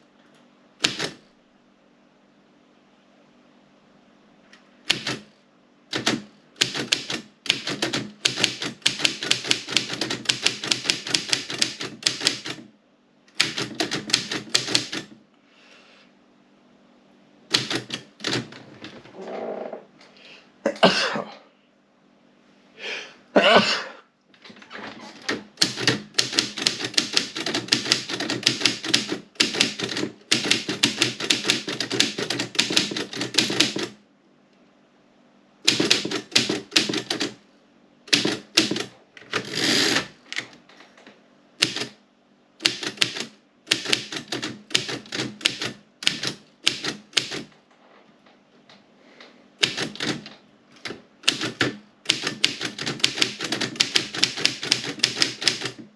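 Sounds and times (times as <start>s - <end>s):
manual typewriter typing: 0.8s - 1.2s, 4.9s - 5.3s, 5.9s - 12.7s, 13.3s - 15.1s, 17.5s - 18.6s, 25.1s - 34.0s, 35.7s - 37.4s, 38.1s - 40.5s, 41.6s - 42.0s, 42.6s - 47.5s, 49.6s - 55.9s.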